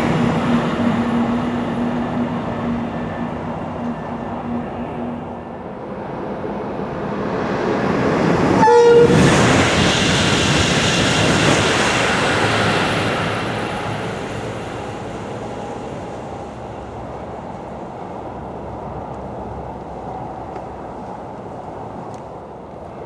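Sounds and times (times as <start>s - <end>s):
train rushing past: 0.0s - 23.0s
train horn blast: 8.6s - 9.9s.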